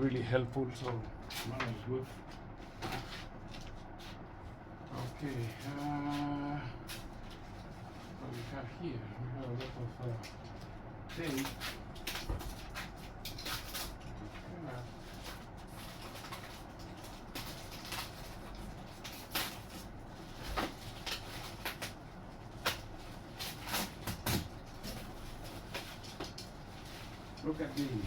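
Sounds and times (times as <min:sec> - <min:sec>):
wrapping crackling: 0:09.5 - 0:28.0.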